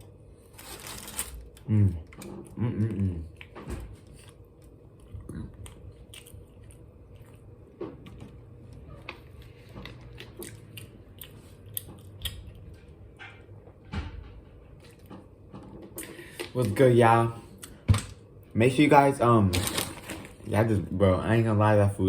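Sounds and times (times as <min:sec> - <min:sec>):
person chewing bread: 0:00.0 - 0:13.2.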